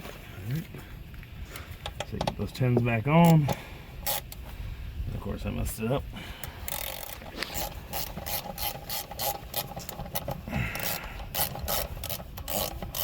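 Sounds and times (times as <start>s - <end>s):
ratchet wrench clicking: 3.2s - 4.4s, 6.5s - 13.0s.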